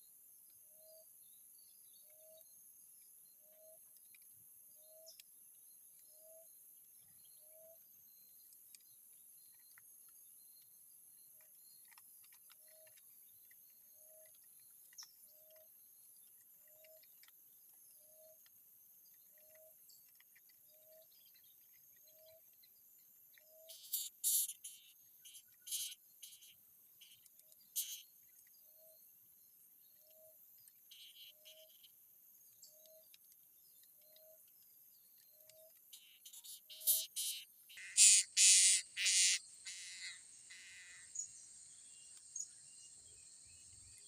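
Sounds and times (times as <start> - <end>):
faint bird chirps: 0.0 - 44.0
faint low insect call: 0.0 - 44.0
loud pulsing insect call: 36.0 - 44.0.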